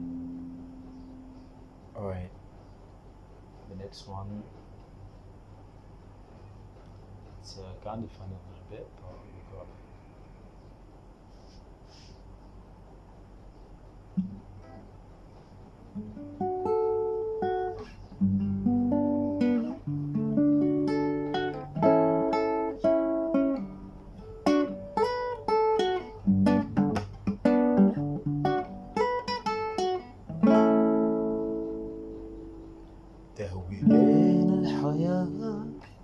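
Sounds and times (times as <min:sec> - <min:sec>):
acoustic guitar playing: 0:00.0 - 0:01.8, 0:14.2 - 0:14.9, 0:15.8 - 0:36.0.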